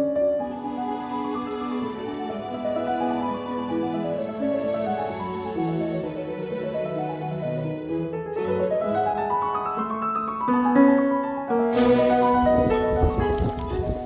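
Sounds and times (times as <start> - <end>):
piano music: 0.0 - 14.0
noisy rustling: 11.8 - 14.0.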